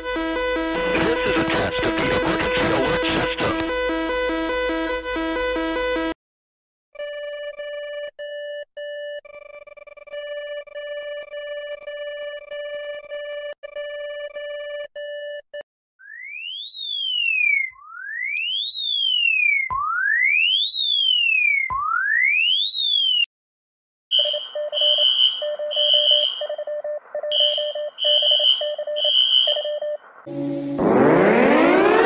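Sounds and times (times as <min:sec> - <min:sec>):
rapid pulsing two-pitch beep: 0:07.6 - 0:15.6, 0:24.2 - 0:30.6
rising and falling alert sweeps: 0:30.3 - 0:32.0
steady electronic buzzing tone: 0:30.3 - 0:32.0.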